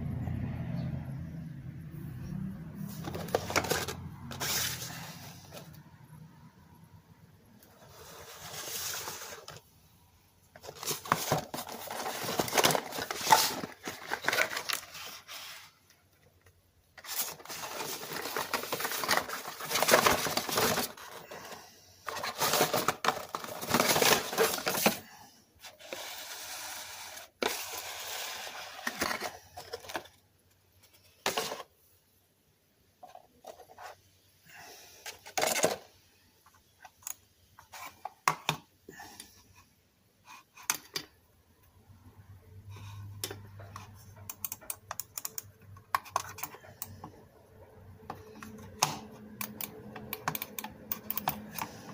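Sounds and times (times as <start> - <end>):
packaging rustling and crinkling: 2.8 - 5.7, 10.5 - 15.8, 17.0 - 30.2.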